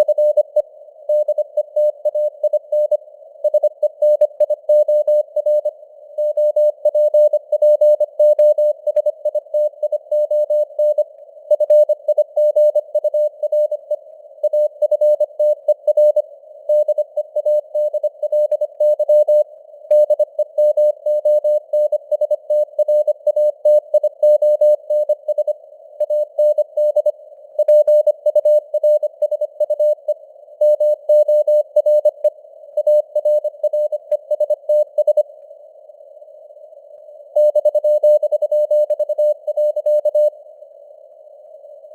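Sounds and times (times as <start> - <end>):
morse code beeps: 14.5 - 35.2, 37.4 - 40.3.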